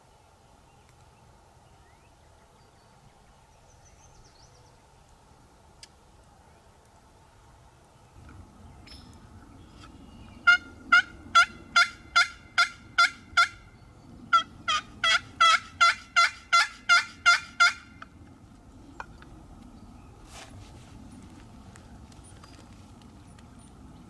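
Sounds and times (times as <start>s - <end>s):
wild turkey yelping: 10.4s - 18.0s.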